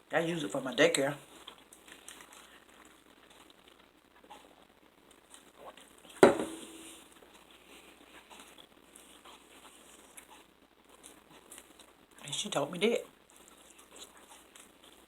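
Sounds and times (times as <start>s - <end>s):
sharp knock with low ringing tone: 6.2s - 6.9s.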